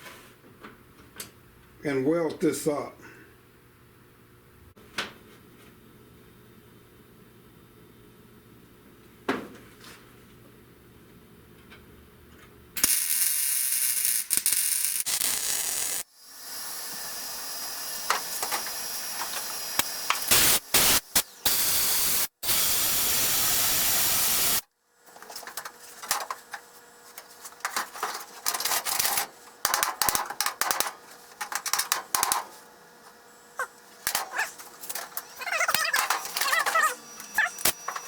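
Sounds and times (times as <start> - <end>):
welding arc sizzling and crackling: 12.8 - 24.6, 25.5 - 32.6, 33.9 - 38.0.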